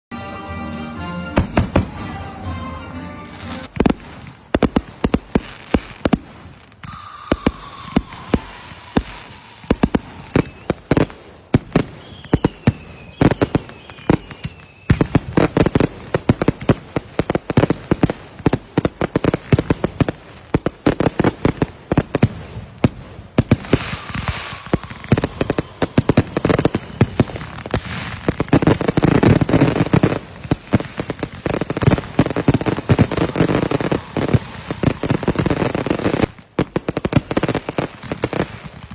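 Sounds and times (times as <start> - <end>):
fireworks bangs and crackling: 1.2 - 38.9
falling firework whistles: 5.9 - 16.8, 23.4 - 38.9.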